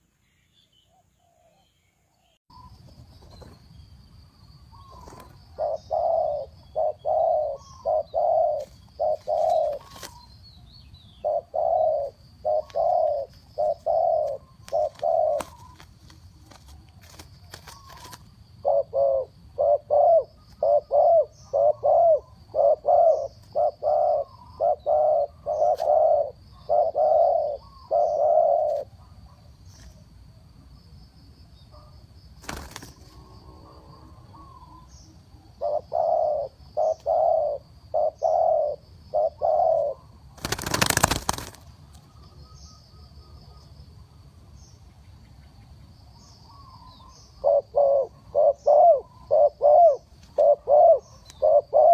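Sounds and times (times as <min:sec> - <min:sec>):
dove cooing: 0:04.7 - 0:10.3, 0:11.1 - 0:29.4, 0:32.5 - 0:42.8, 0:46.5 - 0:51.9.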